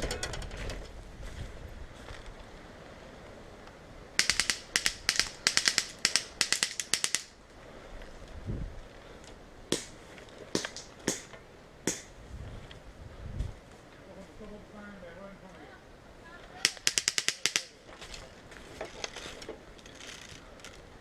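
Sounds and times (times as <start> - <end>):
airsoft gun firing: 4.2 - 7.4, 9.7 - 12.2, 16.6 - 17.8.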